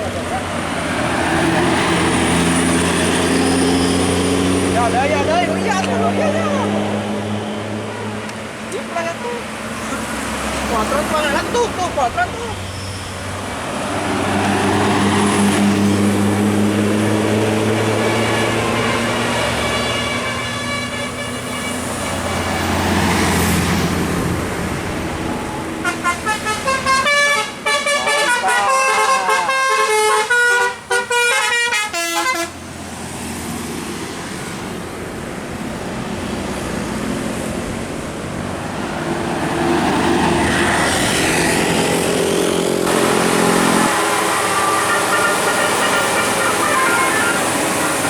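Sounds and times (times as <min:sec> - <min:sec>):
bus engine running: 0:00.0 - 0:28.3, 0:29.8 - 0:48.0
musical air horn tune: 0:25.8 - 0:32.5, 0:43.9 - 0:48.0.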